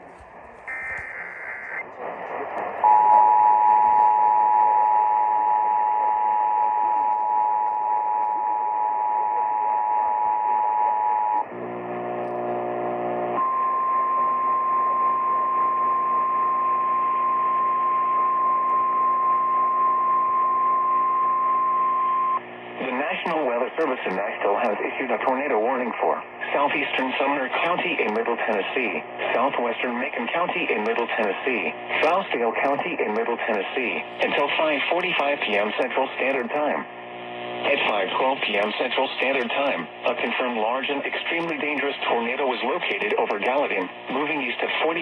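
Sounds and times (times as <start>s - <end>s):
am radio static: 0.0s - 45.0s
data tones: 0.6s - 1.9s.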